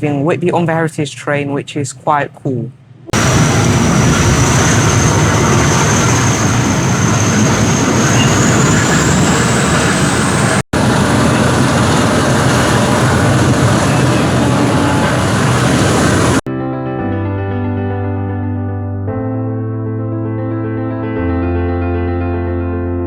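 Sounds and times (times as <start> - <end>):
diesel locomotive engine drone: 2.8 - 16.5
high steady whine: 3.1 - 16.5
wheel and rail running noise: 3.2 - 16.4.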